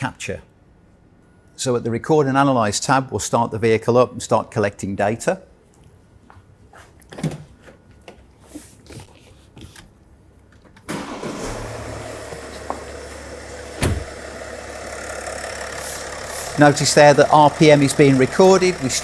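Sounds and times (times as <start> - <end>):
car engine starting and idling: 10.8 - 19.0.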